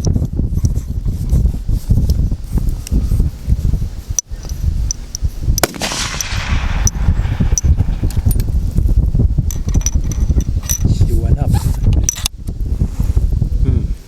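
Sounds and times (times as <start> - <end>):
wind rumble on microphone: 0.0 - 14.0
rifle shots: 5.6 - 8.3.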